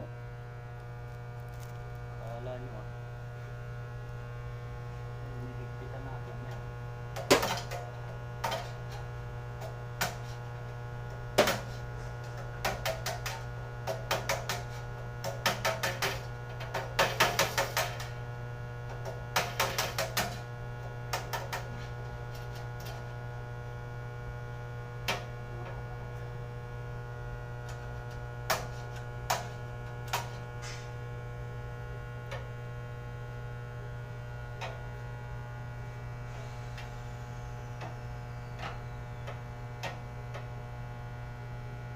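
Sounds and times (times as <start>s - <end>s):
electrical mains hum: 0.0s - 41.9s.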